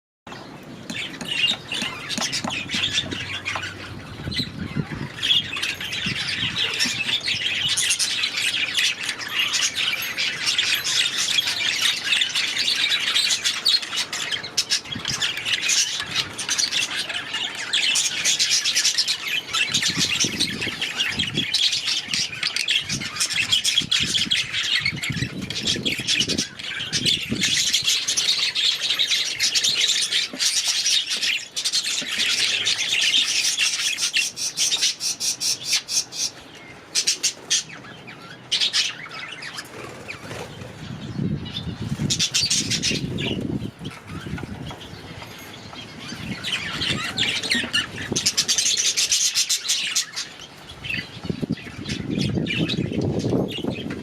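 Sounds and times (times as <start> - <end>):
budgerigars chattering: 0.8 - 54.0.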